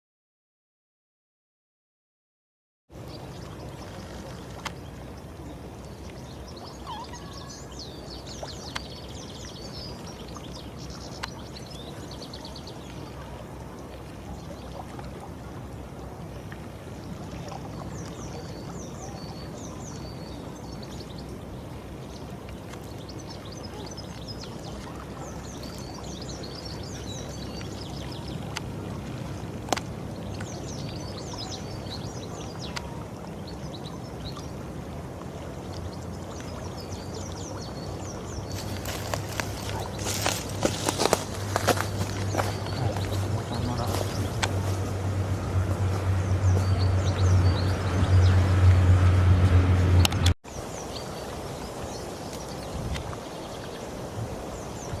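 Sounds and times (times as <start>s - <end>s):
small birds chirping: 3.1s - 14.8s, 17.8s - 34.6s, 35.6s - 48.9s.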